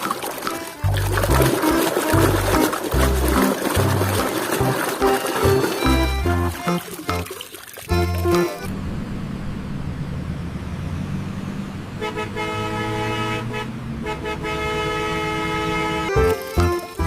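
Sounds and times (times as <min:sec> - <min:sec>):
vehicle engine rumbling: 0:07.9 - 0:17.0
vehicle horn blasts: 0:12.0 - 0:16.2.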